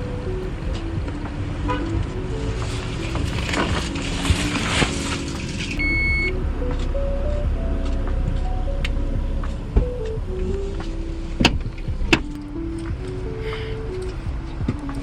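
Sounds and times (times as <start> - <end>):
background music: 0.0 - 15.0
car rumbling on the road: 0.0 - 15.0
high electronic beep: 5.8 - 9.5.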